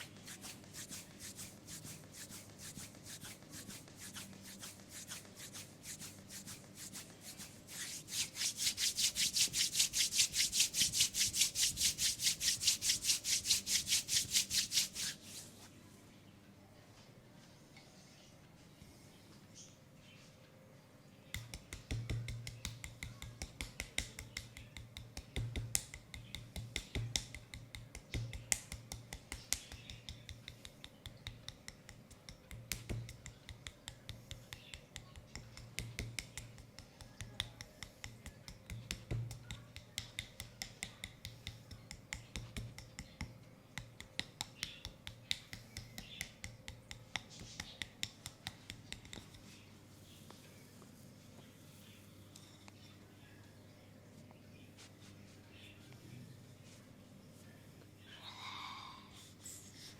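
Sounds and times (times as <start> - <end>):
hands slapping bare leg: 0.0 - 15.4, 21.4 - 43.1.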